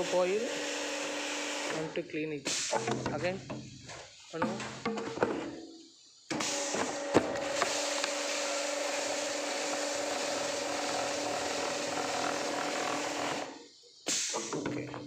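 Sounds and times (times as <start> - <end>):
water spraying under pressure: 0.0 - 1.9, 7.5 - 13.4
pump motor hum: 0.0 - 2.0, 6.3 - 13.5.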